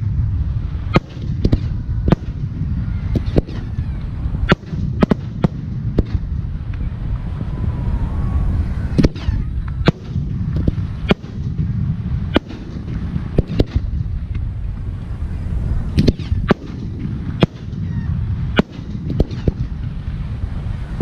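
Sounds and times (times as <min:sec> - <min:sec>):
low rumble: 0:00.0 - 0:21.0
firework shells bursting: 0:09.0 - 0:14.5, 0:16.0 - 0:20.2.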